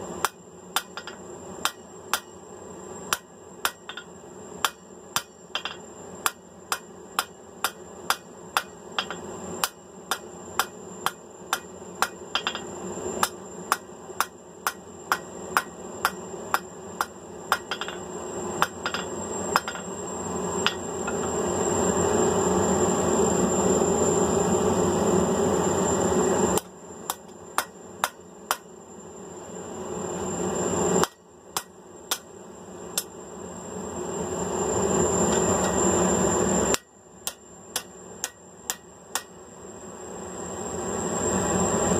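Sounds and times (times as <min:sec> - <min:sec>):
hammer striking steel on anvil: 0:00.2 - 0:02.3, 0:03.1 - 0:18.0, 0:18.6 - 0:19.9, 0:20.6 - 0:21.3, 0:26.6 - 0:28.7, 0:31.0 - 0:32.3, 0:36.7 - 0:39.4.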